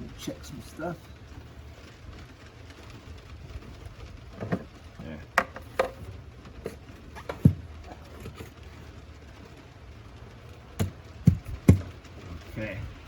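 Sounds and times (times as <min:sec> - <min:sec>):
knocks and clunks of parts: 0:04.3 - 0:08.5, 0:10.8 - 0:12.0.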